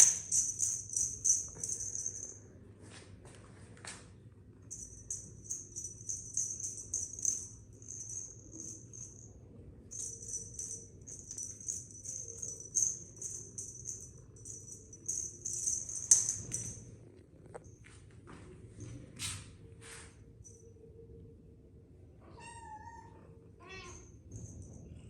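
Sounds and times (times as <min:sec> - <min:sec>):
small bells jingling: 0:00.0 - 0:02.4, 0:04.7 - 0:16.9.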